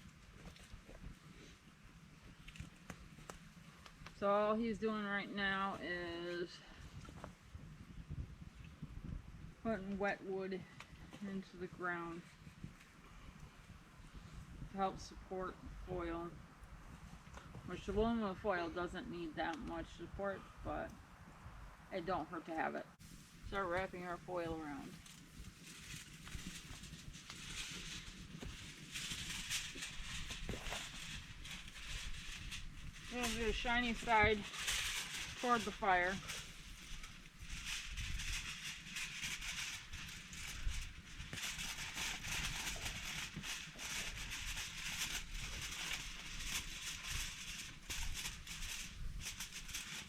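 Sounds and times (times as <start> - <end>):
aluminum foil crinkling: 23.0 - 50.0.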